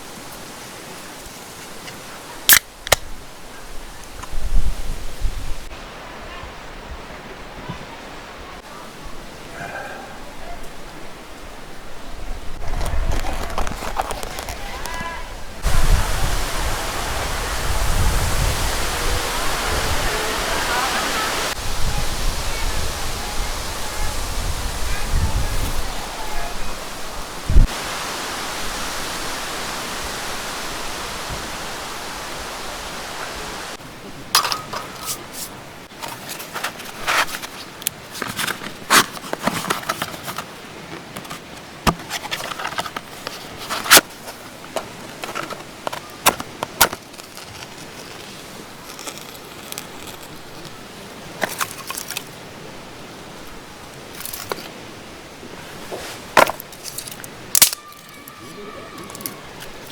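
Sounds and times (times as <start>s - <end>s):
camping gear clicking and clinking: 1.0s - 3.1s, 12.6s - 15.7s, 34.3s - 52.5s, 54.0s - 54.8s, 55.8s - 59.9s.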